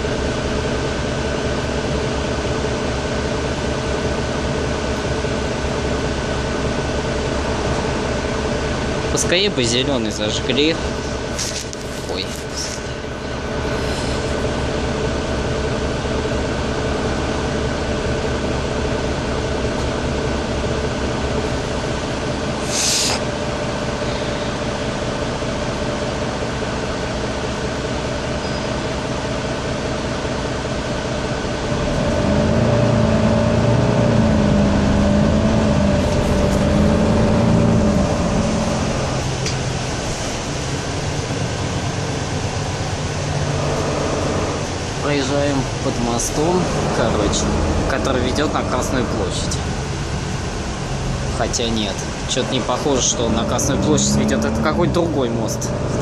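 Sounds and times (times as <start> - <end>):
bus diesel engine running: 0.0 - 56.0
air hiss: 22.6 - 23.3.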